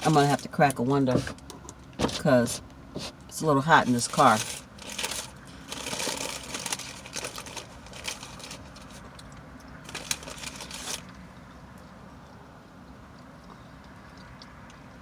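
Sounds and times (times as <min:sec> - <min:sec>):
rustling and crinkling: 0:00.0 - 0:11.2.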